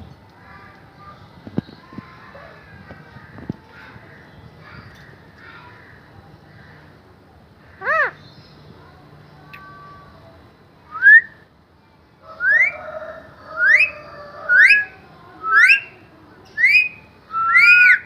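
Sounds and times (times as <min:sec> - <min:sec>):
parrot whistling: 0:12.4 - 0:12.8, 0:15.5 - 0:15.9, 0:16.6 - 0:18.0.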